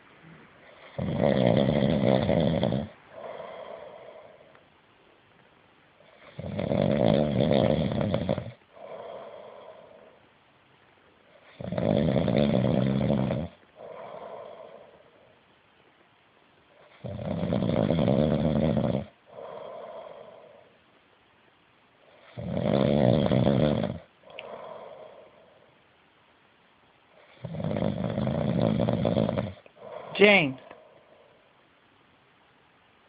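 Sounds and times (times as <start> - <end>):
loud snoring: 0.6 - 4.5, 6.1 - 10.2, 11.4 - 15.1, 16.9 - 20.7, 22.2 - 25.5, 27.2 - 30.9.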